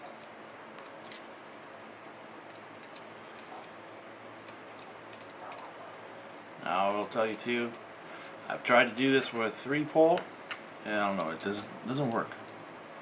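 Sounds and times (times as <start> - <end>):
faint steady hiss: 0.0 - 13.0.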